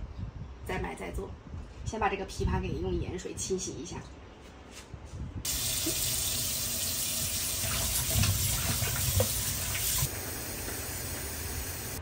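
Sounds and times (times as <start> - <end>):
tap running into sink: 7.3 - 10.1.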